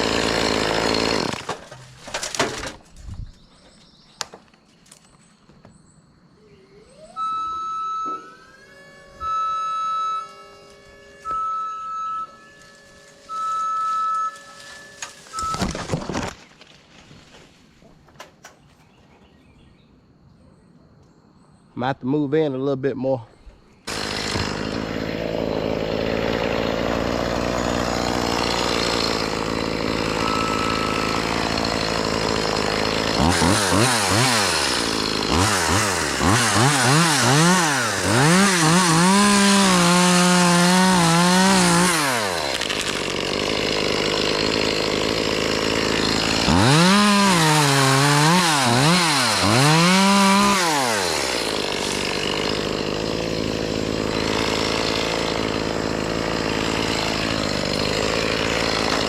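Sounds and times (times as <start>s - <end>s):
chainsaw cutting and revving: 0.0s - 2.6s, 23.9s - 59.0s.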